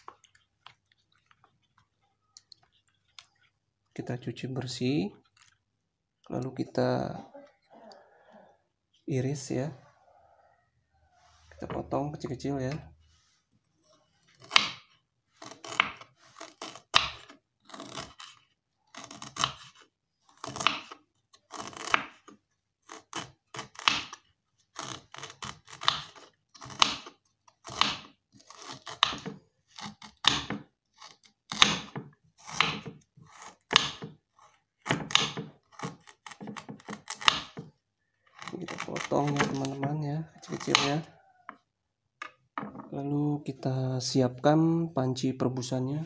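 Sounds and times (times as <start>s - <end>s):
knife slicing ginger: 14.3s - 37.7s, 38.3s - 41.1s.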